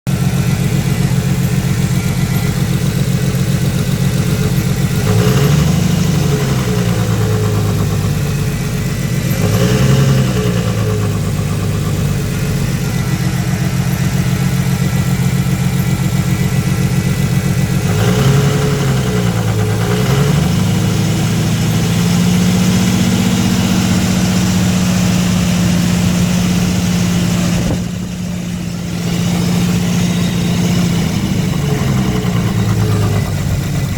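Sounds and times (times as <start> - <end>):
car engine idling and revving: 0.0 - 33.9.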